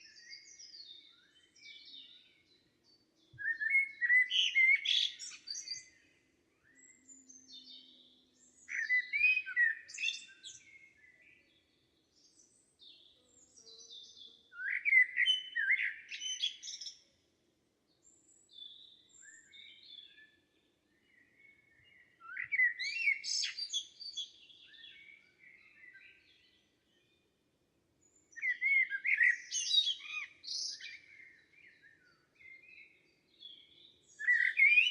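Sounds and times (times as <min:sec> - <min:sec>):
songbird singing: 0:00.0 - 0:34.9
bird chirps and calls: 0:03.3 - 0:06.1, 0:06.7 - 0:11.3, 0:13.3 - 0:17.0, 0:22.2 - 0:26.6, 0:28.2 - 0:34.9.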